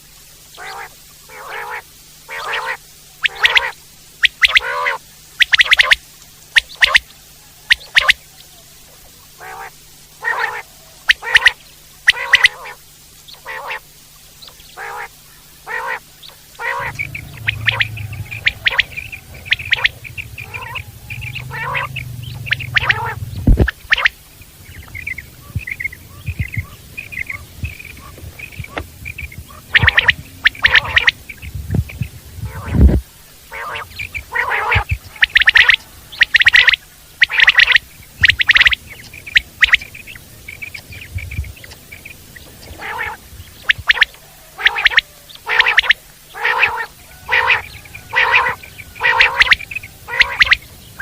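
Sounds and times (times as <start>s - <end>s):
quail calling: 0.6s - 8.7s, 9.3s - 51.0s
rapid soft chirps: 2.3s - 8.5s, 10.1s - 51.0s
low hum: 12.8s - 44.3s.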